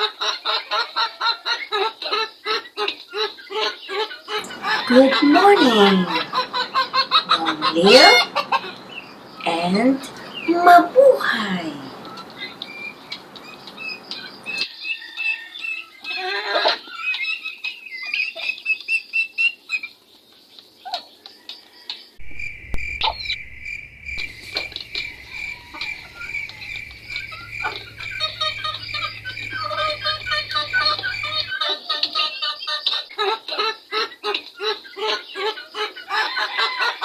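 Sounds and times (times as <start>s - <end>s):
chicks peeping: 4.4s - 14.6s
cricket chirping: 4.4s - 14.6s, 22.2s - 31.5s
low hum: 4.4s - 14.6s, 22.2s - 31.5s.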